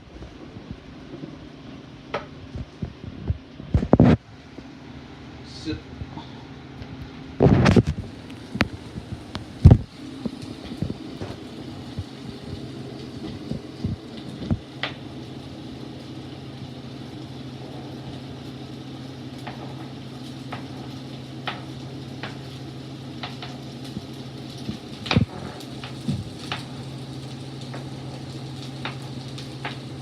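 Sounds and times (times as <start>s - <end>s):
steady low hum: 0.0s - 30.0s
onions sizzling in oil: 7.5s - 30.0s.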